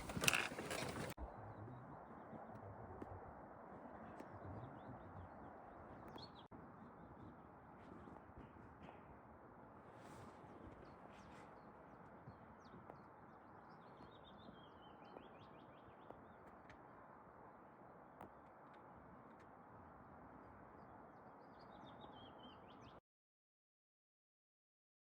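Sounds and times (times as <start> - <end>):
faint songbird song: 4.0 - 6.5, 10.0 - 16.8, 20.3 - 23.0.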